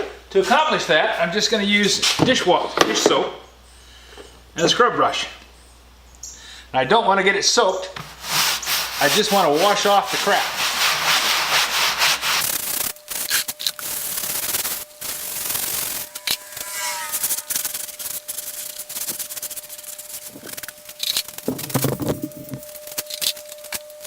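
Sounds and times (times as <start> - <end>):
scrub brush scrubbing wood: 8.0 - 22.6.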